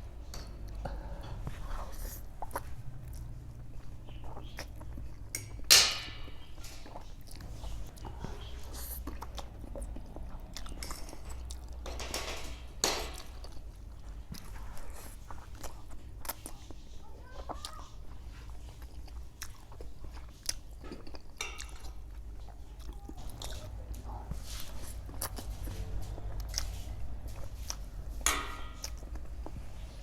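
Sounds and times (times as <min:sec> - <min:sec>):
chewing and biting noodles: 0:01.8 - 0:05.3, 0:06.9 - 0:11.8, 0:13.2 - 0:28.1.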